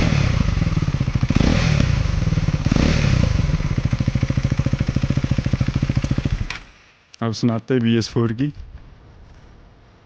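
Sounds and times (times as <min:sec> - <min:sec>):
motorcycle engine revving: 0:00.0 - 0:06.7.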